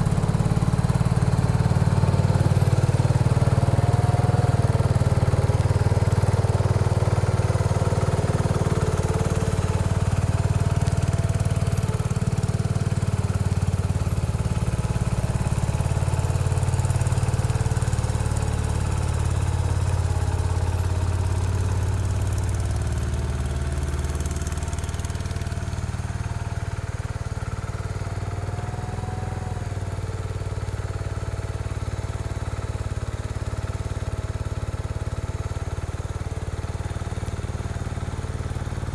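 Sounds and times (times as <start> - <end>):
garden tractor engine running: 0.0 - 38.9.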